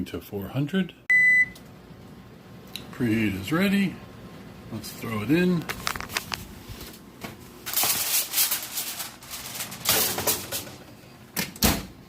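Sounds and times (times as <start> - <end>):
oven rack clattering: 7.7 - 10.9.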